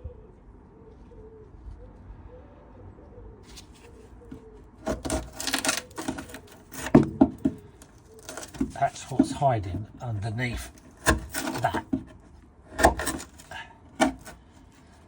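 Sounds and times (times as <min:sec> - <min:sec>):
pigeon cooing: 0:00.0 - 0:06.7
scraping and rubbing: 0:03.5 - 0:15.0.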